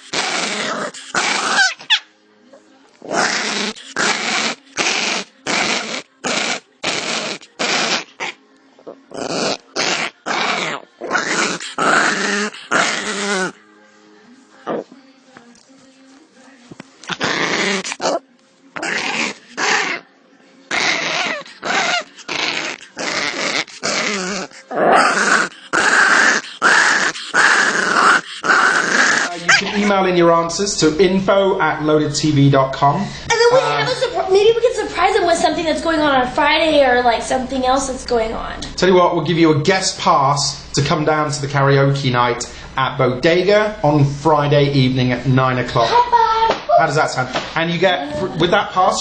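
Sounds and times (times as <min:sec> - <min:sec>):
animal growling: 0:00.0 - 0:01.9, 0:03.0 - 0:13.6, 0:17.1 - 0:18.2, 0:18.8 - 0:20.0, 0:20.7 - 0:29.9.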